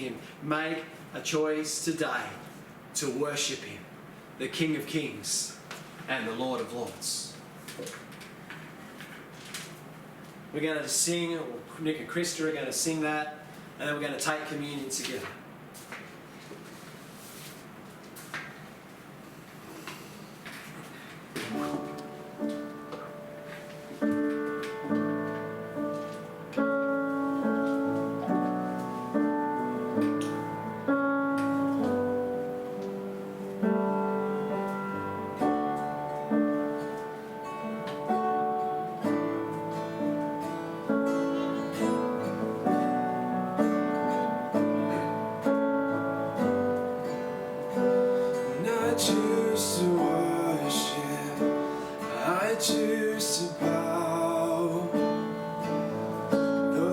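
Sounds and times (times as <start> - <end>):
acoustic guitar: 19.7 - 56.9
piano chords: 21.3 - 56.9.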